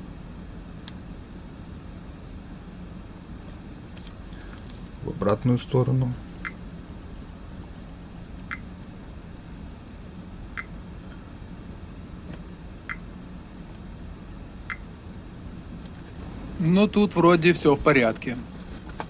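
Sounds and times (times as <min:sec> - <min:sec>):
test probes ticking: 0:08.4 - 0:08.7, 0:10.6 - 0:10.8, 0:12.9 - 0:13.1, 0:14.7 - 0:14.9.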